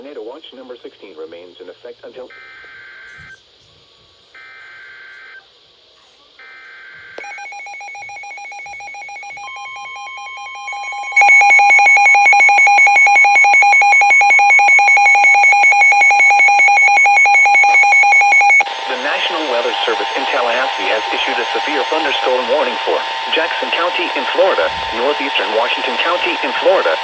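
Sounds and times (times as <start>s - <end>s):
rapid pulsing alarm beep: 6.4s - 27.0s
steady warning tone: 6.4s - 27.0s
screeching data bursts: 10.4s - 27.0s.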